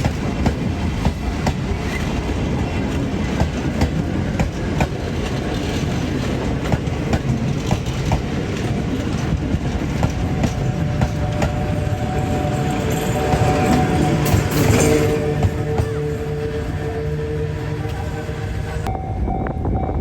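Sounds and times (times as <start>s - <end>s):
wheels clacking over rail joints: 0.0s - 17.2s
train wheels rumbling on rail: 0.0s - 20.0s.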